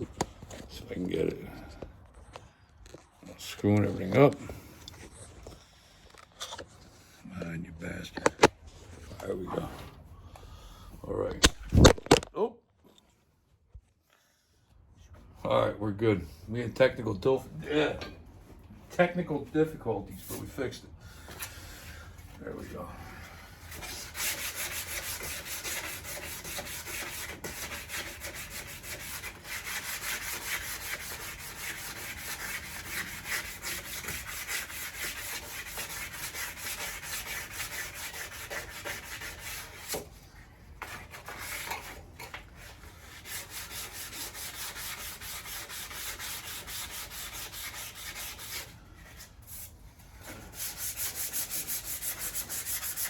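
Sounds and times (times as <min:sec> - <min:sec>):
sanding steel bodywork: 0:22.5 - 0:40.1, 0:42.6 - 0:53.0.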